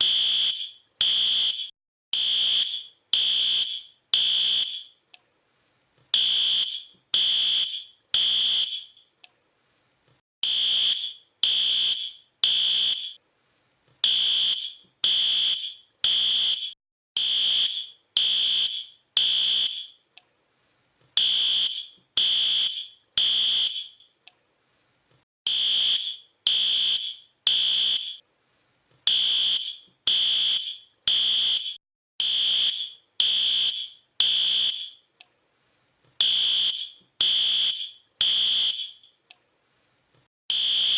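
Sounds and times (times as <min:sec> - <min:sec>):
fire alarm beeping: 0:00.0 - 0:05.0, 0:06.2 - 0:09.0, 0:10.4 - 0:13.2, 0:14.0 - 0:20.0, 0:21.2 - 0:24.1, 0:25.5 - 0:28.2, 0:29.1 - 0:35.0, 0:36.2 - 0:39.2, 0:40.5 - 0:40.9.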